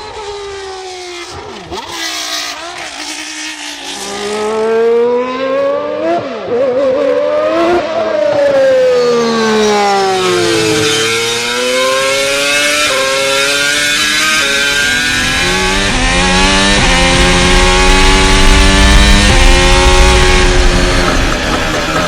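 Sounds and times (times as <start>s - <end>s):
racing engine at high revs: 0.0s - 22.0s.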